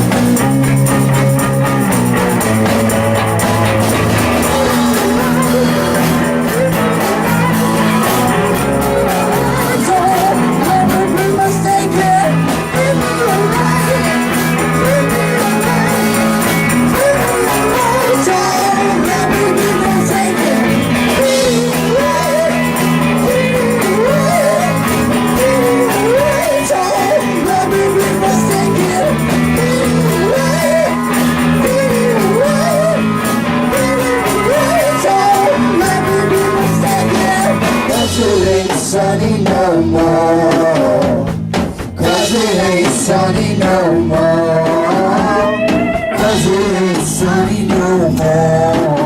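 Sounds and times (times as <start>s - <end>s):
electric guitar lead line bending: 0.0s - 39.1s
blues-rock band playing: 0.0s - 49.0s
person singing: 0.0s - 49.0s.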